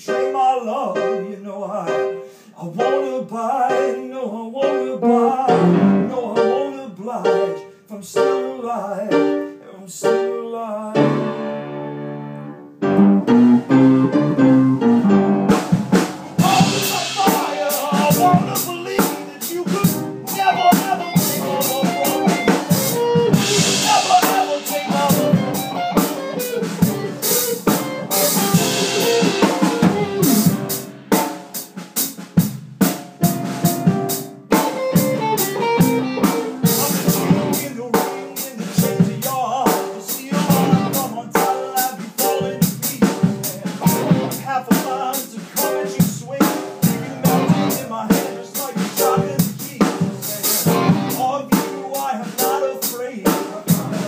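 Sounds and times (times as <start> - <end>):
band playing instrumental: 5.4 - 6.6, 11.0 - 54.0
drum kit: 12.8 - 54.0.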